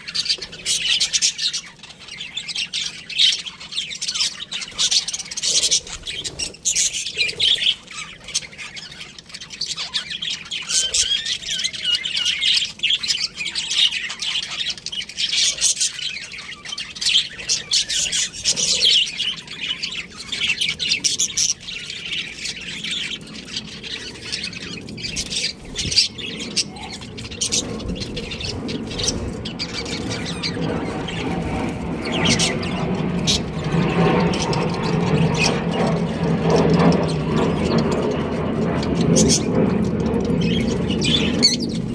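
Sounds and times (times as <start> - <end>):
budgerigars chirping and squawking: 0.0 - 41.9.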